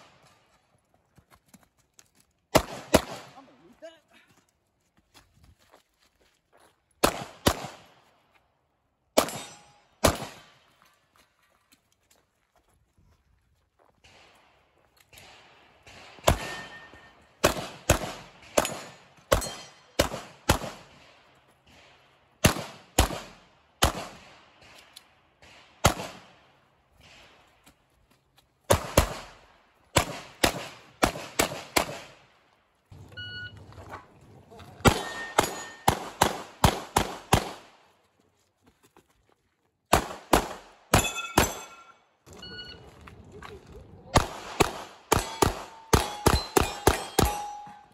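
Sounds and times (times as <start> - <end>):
pistol shots: 2.5 - 3.4, 7.0 - 7.9, 9.2 - 10.6, 15.2 - 21.0, 22.4 - 26.4, 28.7 - 32.2, 34.8 - 37.7, 39.9 - 41.8, 44.2 - 47.8.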